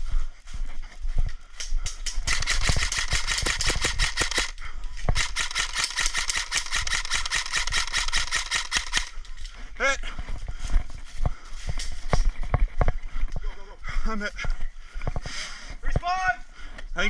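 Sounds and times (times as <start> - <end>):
airsoft gun firing rapidly: 2.2 - 9.2.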